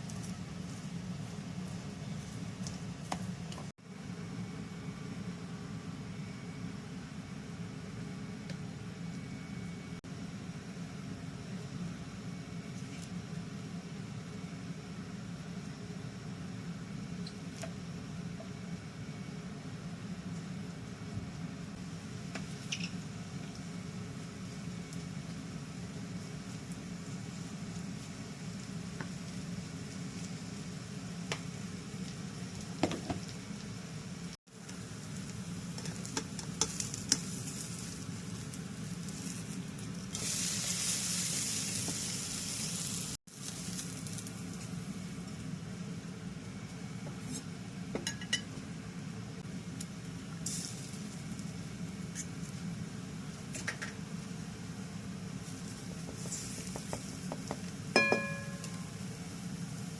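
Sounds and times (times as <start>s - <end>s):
food sizzling in a frying pan: 21.8s - 48.8s, 49.5s - 59.9s.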